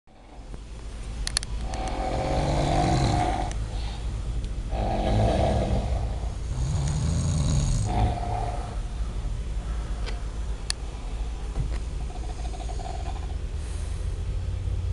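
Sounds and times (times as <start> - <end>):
person snoring loudly: 1.6 - 3.6, 4.7 - 8.8.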